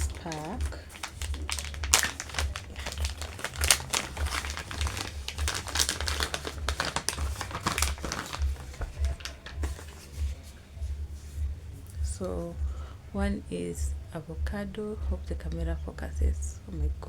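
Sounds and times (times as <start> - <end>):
plastic packaging crinkling: 0.0 - 10.5.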